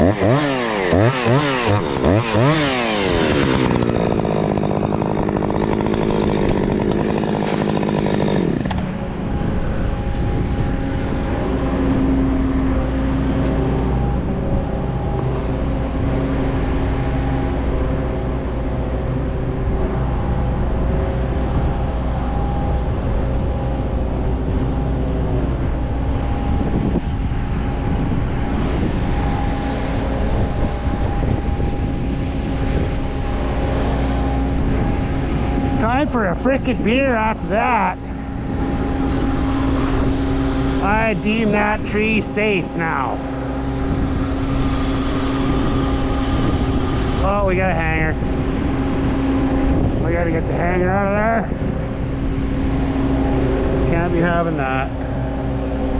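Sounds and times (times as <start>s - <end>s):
chainsaw running at high revs: 0.0s - 9.2s, 28.5s - 51.2s
small engine running: 0.0s - 55.9s.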